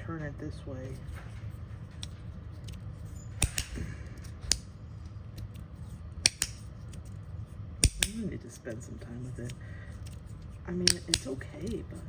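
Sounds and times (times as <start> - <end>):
magnetic plates snapping clicks: 3.4 - 4.7, 6.2 - 7.1, 7.8 - 8.3, 10.8 - 11.8.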